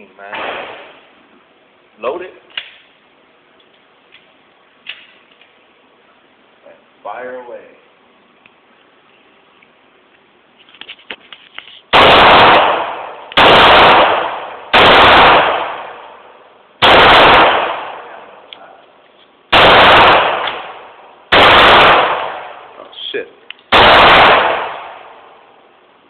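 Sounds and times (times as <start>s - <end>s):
pistol shots: 0.3s - 1.0s, 11.9s - 16.2s, 16.8s - 18.3s, 19.5s - 22.7s, 23.7s - 25.4s.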